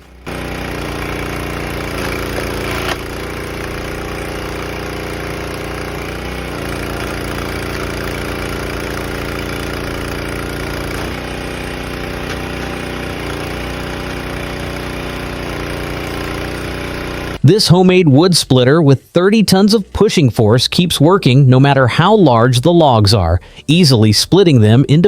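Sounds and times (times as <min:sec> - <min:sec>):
log splitter engine running: 0:00.0 - 0:18.7.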